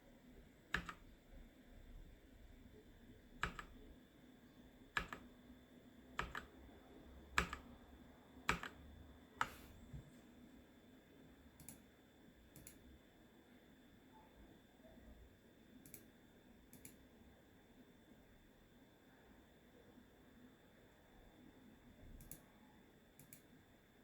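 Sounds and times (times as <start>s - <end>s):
mechanical keyboard key clicks: 0.8s - 1.0s, 3.4s - 3.8s, 5.0s - 5.2s, 6.2s - 6.5s, 7.4s - 7.7s, 8.5s - 8.8s.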